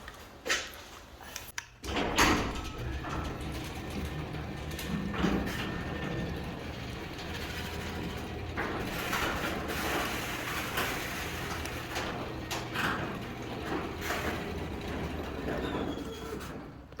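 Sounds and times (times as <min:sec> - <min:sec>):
garage door rumbling and rattling: 0:01.8 - 0:17.0.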